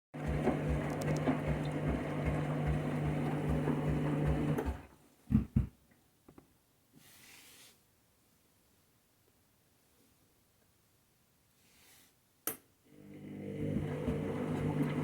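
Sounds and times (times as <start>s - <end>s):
washing machine motor hum: 0.1s - 5.0s, 12.9s - 15.0s.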